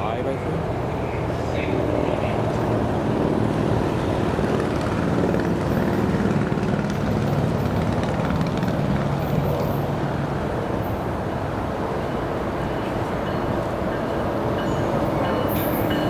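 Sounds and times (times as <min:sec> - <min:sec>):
diesel locomotive engine droning: 0:00.0 - 0:16.0.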